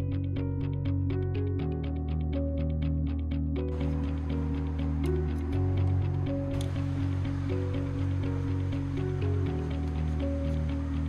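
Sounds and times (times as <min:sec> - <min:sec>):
instrumental background music: 0:00.0 - 0:11.0.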